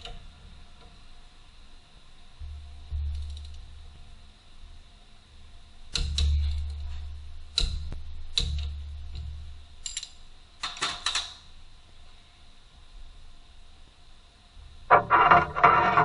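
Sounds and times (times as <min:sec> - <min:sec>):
sharp clicks and knocks: 0:05.9 - 0:06.8, 0:14.9 - 0:16.0.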